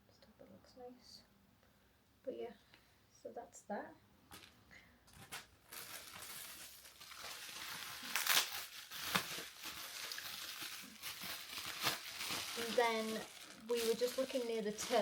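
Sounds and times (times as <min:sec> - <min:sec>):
packaging bag crinkling: 0:05.1 - 0:15.0.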